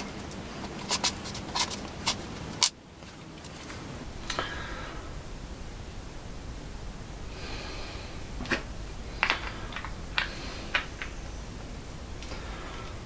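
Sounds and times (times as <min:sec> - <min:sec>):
metal parts rustling: 0:08.4 - 0:11.4.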